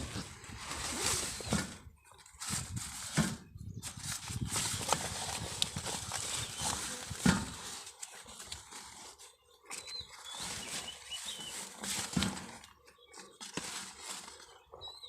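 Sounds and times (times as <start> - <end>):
rustling and handling noises: 0.0 - 15.0
small bird chirping: 9.2 - 11.9.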